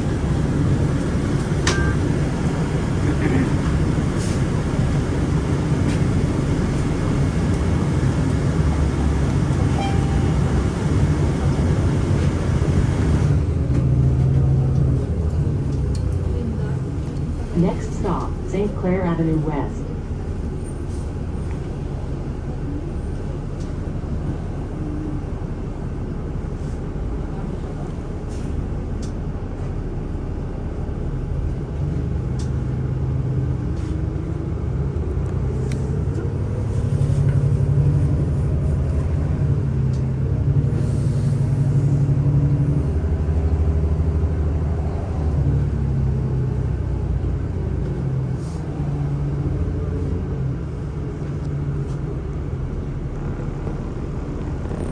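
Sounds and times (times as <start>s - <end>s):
bus engine rumbling: 0.0s - 54.9s.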